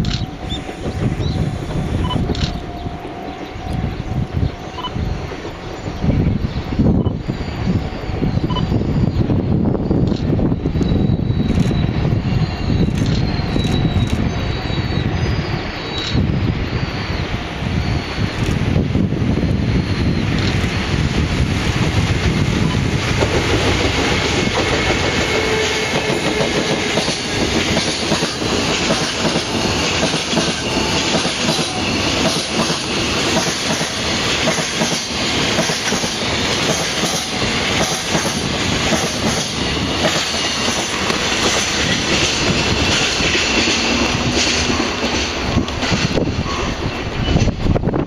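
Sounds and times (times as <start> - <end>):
freight train wagons clattering: 22.6 - 47.8.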